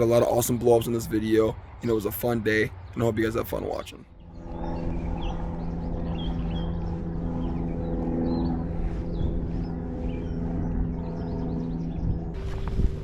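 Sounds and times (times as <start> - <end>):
songbirds chirping: 0.0 - 12.8
steady low hum: 3.9 - 13.0.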